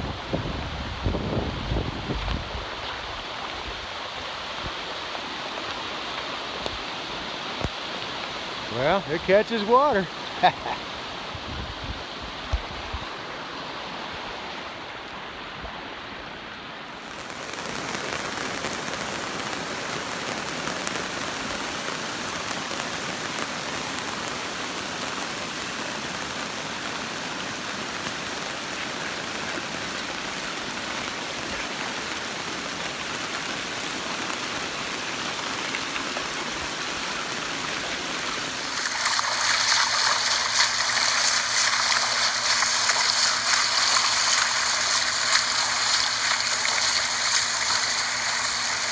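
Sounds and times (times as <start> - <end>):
rain: 0.0 - 48.9
runoff water rushing: 0.0 - 48.9.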